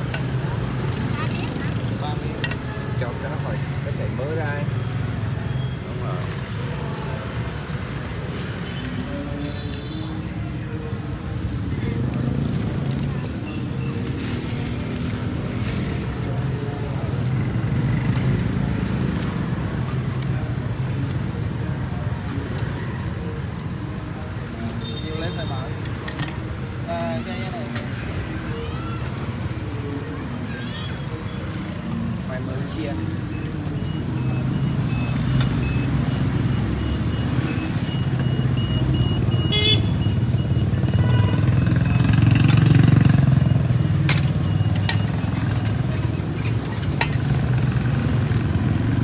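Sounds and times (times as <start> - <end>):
motorbikes and cars passing: 0.0 - 49.0
street traffic hum: 0.0 - 49.0
vehicle horn beep: 39.0 - 40.2, 40.9 - 42.1.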